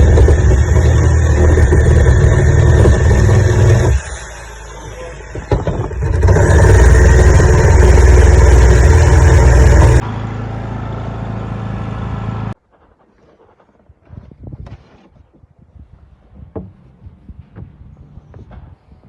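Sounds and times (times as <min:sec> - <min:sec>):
loud motor running: 0:00.0 - 0:12.6.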